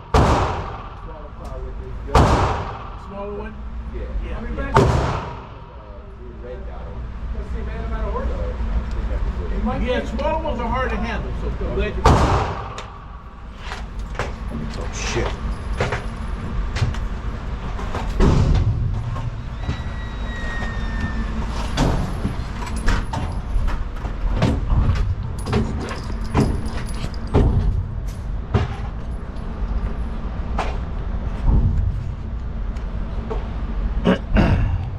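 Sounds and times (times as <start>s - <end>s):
gunshots: 0.1s - 1.1s, 2.1s - 3.1s, 4.8s - 5.7s, 12.0s - 13.0s
low rumble: 11.2s - 34.9s.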